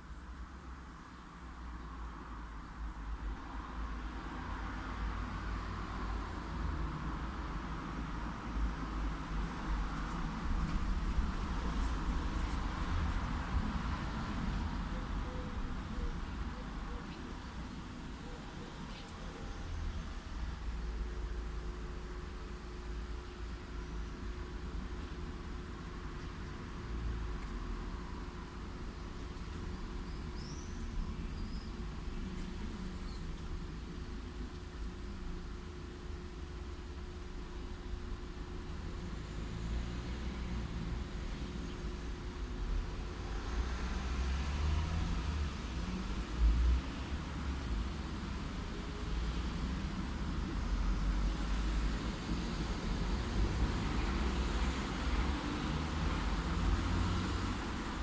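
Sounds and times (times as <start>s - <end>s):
city traffic rumble: 0.0s - 58.0s
passing cars hum: 30.8s - 58.0s.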